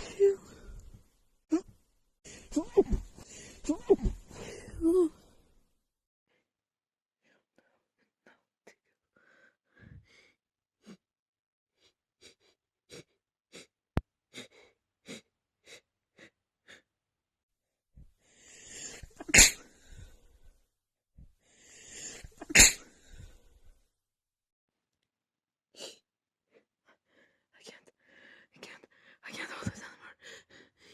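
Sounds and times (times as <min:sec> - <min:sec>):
woman sneezing: 0:19.2 - 0:19.7, 0:22.4 - 0:22.9.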